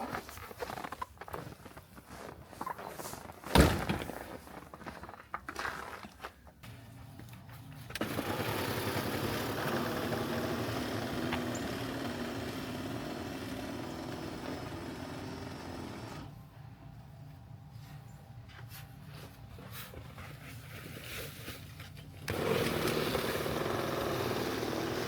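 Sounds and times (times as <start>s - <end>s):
engine running: 7.9s - 16.5s, 22.2s - 25.0s
low steady hum: 14.0s - 22.3s.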